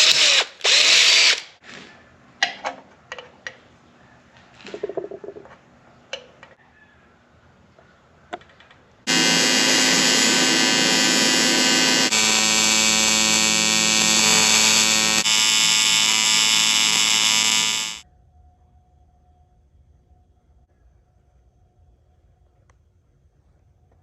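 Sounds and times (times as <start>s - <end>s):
welding arc buzzing: 9.1s - 18.0s.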